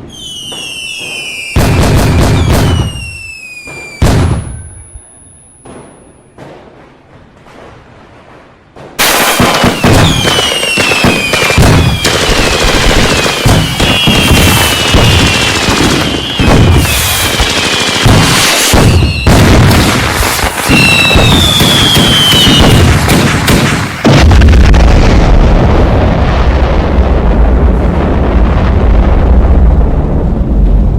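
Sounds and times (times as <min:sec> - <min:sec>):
fireworks whistles falling in pitch: 0:00.0 - 0:06.6, 0:09.0 - 0:24.0
fireworks bangs and crackles: 0:00.0 - 0:30.9
deep rumble of blasts: 0:21.1 - 0:30.9.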